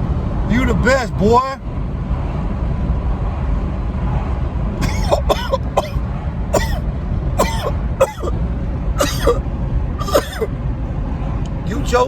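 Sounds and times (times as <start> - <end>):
steady low rumble: 0.0 - 12.0
person hiccuping: 4.8 - 6.0, 7.4 - 8.4, 9.0 - 9.4, 10.0 - 10.5.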